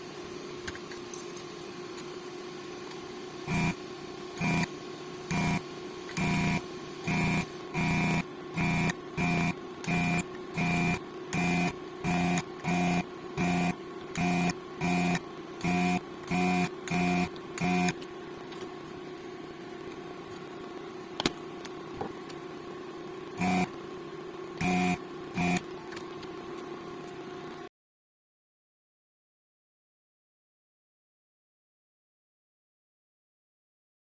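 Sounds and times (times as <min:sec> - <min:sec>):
floppy disk drive buzzing: 0:00.0 - 0:18.9, 0:23.0 - 0:27.7
steady hum: 0:00.0 - 0:27.7.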